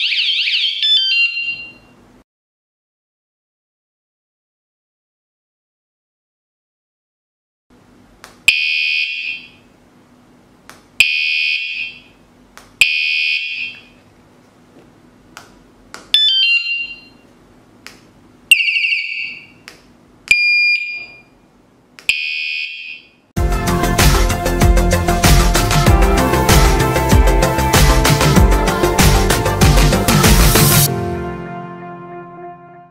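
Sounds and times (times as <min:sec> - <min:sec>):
alarm click: 0:00.0 - 0:01.8, 0:08.5 - 0:09.6, 0:11.0 - 0:12.1, 0:12.8 - 0:13.9, 0:16.1 - 0:17.2, 0:18.5 - 0:19.6, 0:20.3 - 0:21.3, 0:22.0 - 0:23.2
bike alarm beeping: 0:00.0 - 0:01.9, 0:11.0 - 0:12.1, 0:16.2 - 0:17.2, 0:18.5 - 0:19.6, 0:20.3 - 0:21.3, 0:22.1 - 0:23.2.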